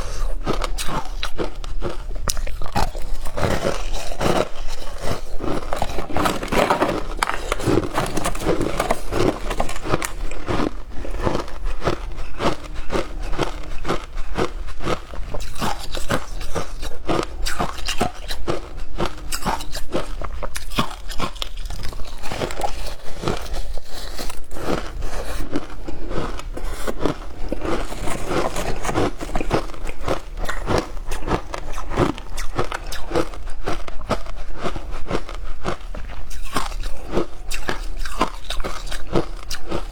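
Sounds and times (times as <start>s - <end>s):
ice being bitten and chewed: 0.0s - 39.9s.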